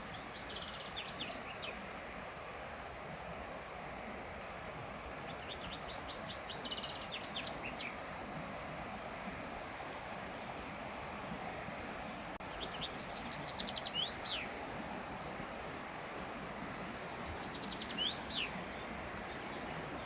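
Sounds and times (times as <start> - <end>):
songbird singing: 0.0 - 2.0, 5.1 - 8.4, 12.4 - 15.5, 16.4 - 20.0
river rushing: 0.0 - 20.0.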